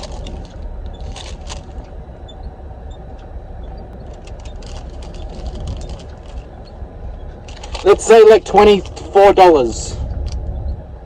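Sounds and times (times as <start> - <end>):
paper and snack packets rustling: 0.0 - 0.5
low hum: 0.0 - 11.0.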